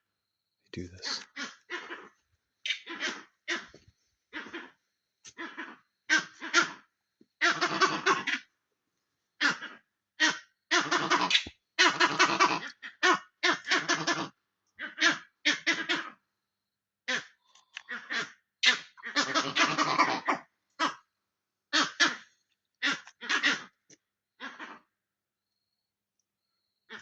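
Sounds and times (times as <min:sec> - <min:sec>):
monkeys chattering alarm calls: 0:00.8 - 0:03.8, 0:09.4 - 0:16.1, 0:18.6 - 0:20.9.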